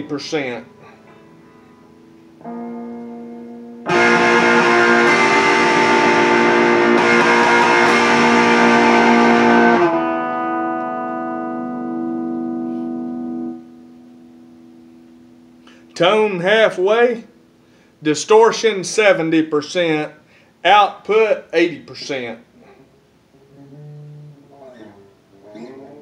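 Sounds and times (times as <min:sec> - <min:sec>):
distorted electric guitar chord: 0:00.0 - 0:17.5.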